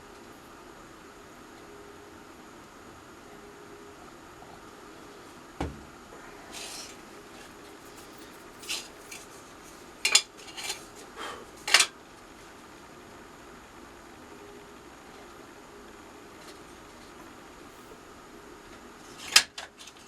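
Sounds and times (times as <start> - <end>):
knock on workbench: 5.6 - 5.9.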